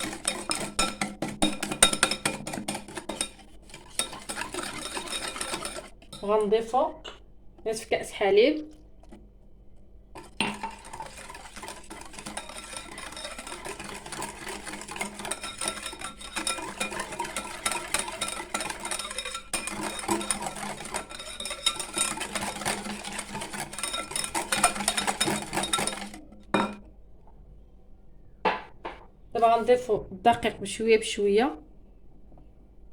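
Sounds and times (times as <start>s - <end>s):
whisk clinking against bowl: 0.0s - 6.6s, 10.2s - 26.9s.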